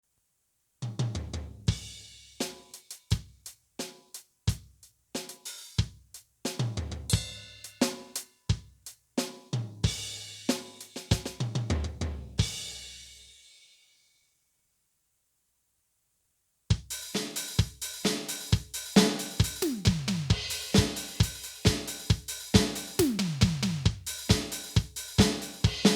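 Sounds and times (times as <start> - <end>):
electronic drum groove: 9.7 - 12.6, 16.7 - 25.9.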